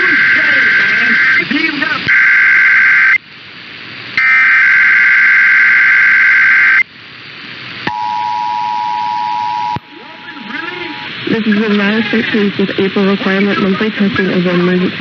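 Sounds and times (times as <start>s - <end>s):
radio hiss: 0.0s - 7.9s, 9.8s - 15.0s
two-tone attention signal: 7.9s - 11.1s.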